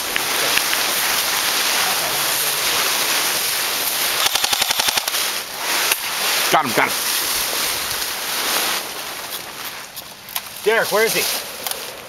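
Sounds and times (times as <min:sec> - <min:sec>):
airsoft gun full-auto burst: 0:04.1 - 0:05.4.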